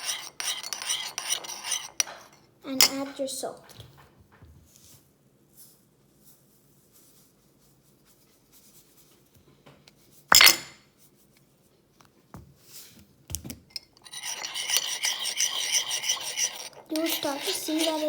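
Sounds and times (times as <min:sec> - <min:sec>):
spoon scraping while stirring: 0:00.0 - 0:03.1, 0:13.7 - 0:18.0.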